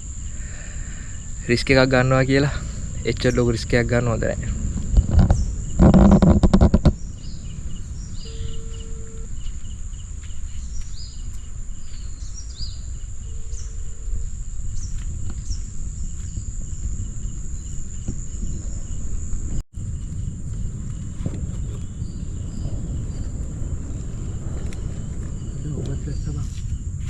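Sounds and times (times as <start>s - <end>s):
high-pitched insect drone: 0.0s - 27.0s
low rumble of wind or surf: 0.0s - 27.0s
short bird chirps: 7.2s - 9.3s.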